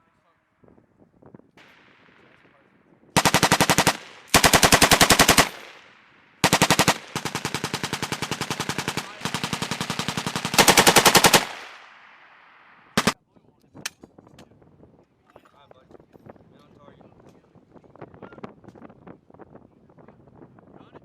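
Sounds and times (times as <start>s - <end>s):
machine gun bursts: 3.2s - 13.2s.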